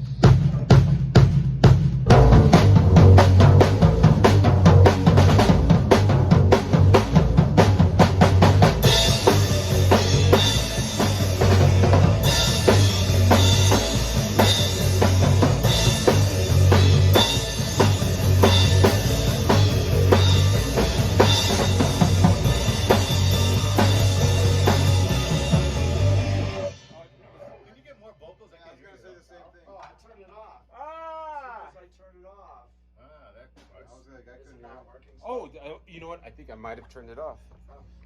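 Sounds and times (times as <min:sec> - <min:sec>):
steady drum beat: 0:00.0 - 0:27.0
repeating bass line: 0:02.1 - 0:26.7.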